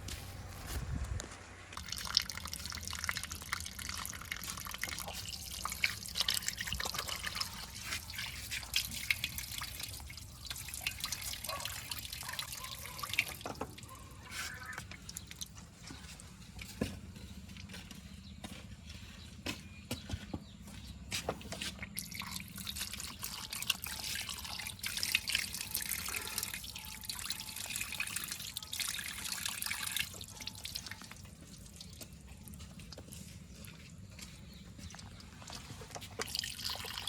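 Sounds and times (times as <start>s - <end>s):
low engine hum: 0.0s - 1.8s
wet mud dripping and splattering: 1.8s - 12.2s.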